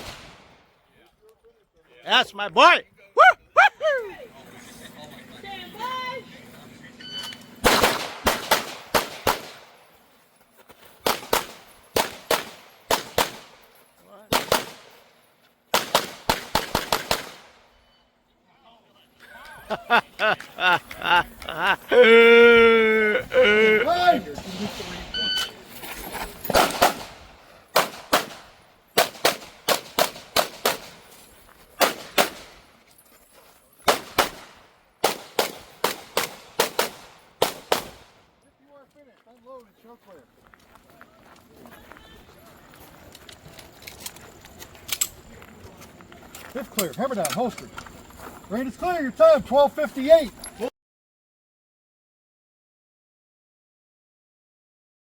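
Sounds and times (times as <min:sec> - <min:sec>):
pistol firing: 0:07.6 - 0:09.7, 0:11.1 - 0:13.6, 0:14.3 - 0:14.9, 0:15.7 - 0:17.6, 0:26.5 - 0:30.9, 0:31.8 - 0:32.6, 0:33.9 - 0:38.1
shot timer beep: 0:25.1 - 0:25.5.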